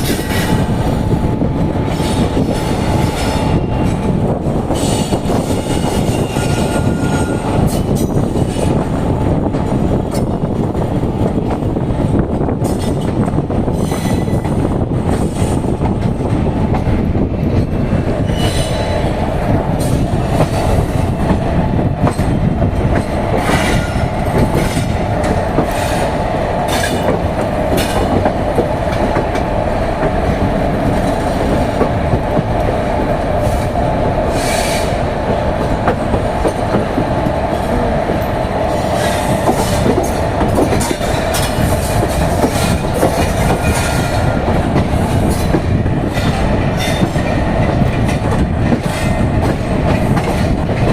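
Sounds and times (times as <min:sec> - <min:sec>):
train rumbling on rails: 0:00.0 - 0:50.9
wheels clicking over rail joints: 0:22.0 - 0:50.9.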